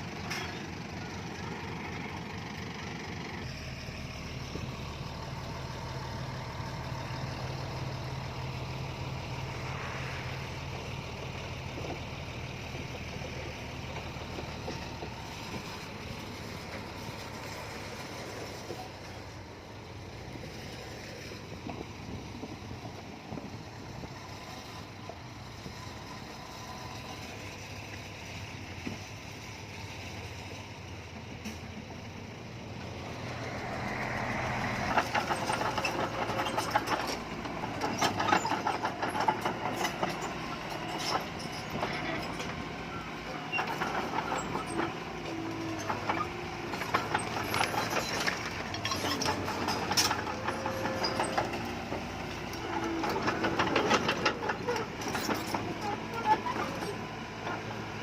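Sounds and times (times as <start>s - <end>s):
heavy machinery engine: 0.0s - 58.0s
clatter of knocks and rattles: 34.8s - 42.7s, 43.5s - 57.7s.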